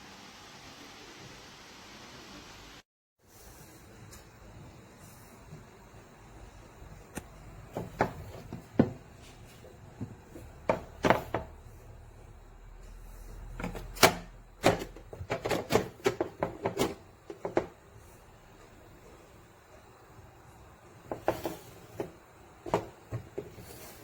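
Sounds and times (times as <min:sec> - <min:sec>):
plastic bins clicking and knocking: 0:13.6 - 0:17.8.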